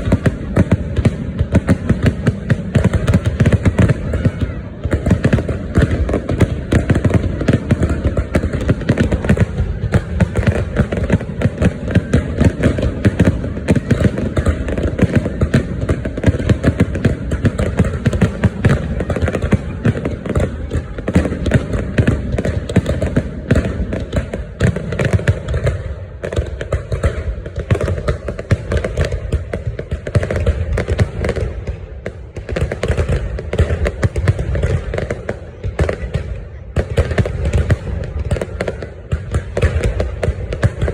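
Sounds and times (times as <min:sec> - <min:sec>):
fireworks crackling and popping: 0:00.0 - 0:40.9
low firework booms: 0:00.0 - 0:40.9.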